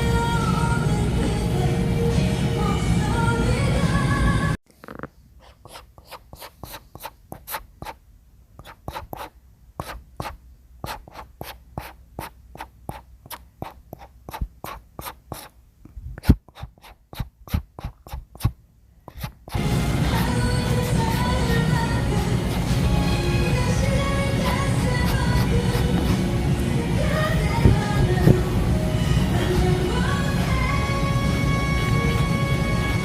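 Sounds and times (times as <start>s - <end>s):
background music: 0.0s - 4.6s, 19.6s - 33.0s
brush strokes on wood: 8.6s - 15.5s.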